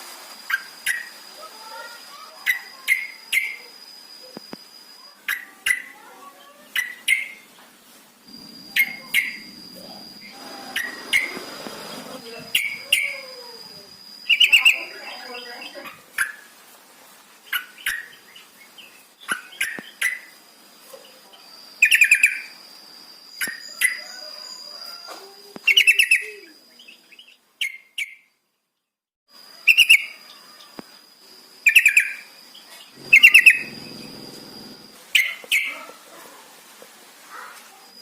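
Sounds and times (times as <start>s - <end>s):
faint high-pitched tone: 8.3s - 11.1s, 33.0s - 35.0s
bird chattering: 8.6s - 13.1s, 33.0s - 34.9s.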